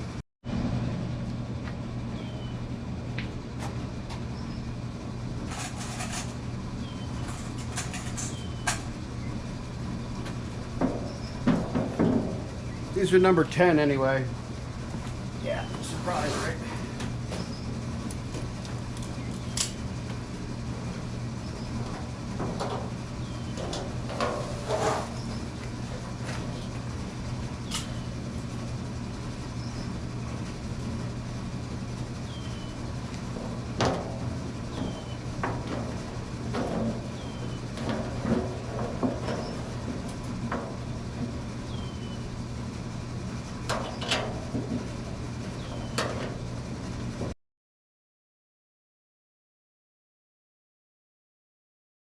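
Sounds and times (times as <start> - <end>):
steady low hum: 0.0 - 47.4.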